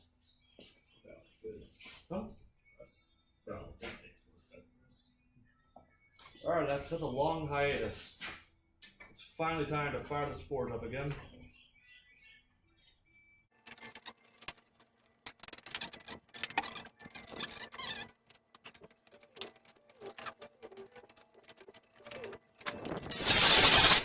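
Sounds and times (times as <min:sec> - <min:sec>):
metallic clattering and rattling: 0:22.7 - 0:24.0.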